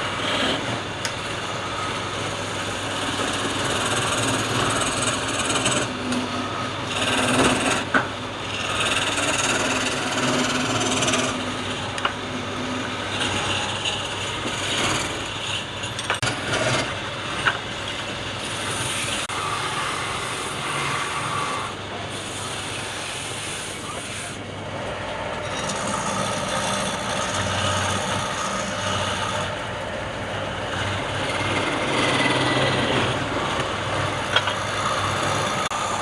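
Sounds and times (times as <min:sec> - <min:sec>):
wood lathe tool scraping wood: 0:00.0 - 0:24.4, 0:25.4 - 0:36.0.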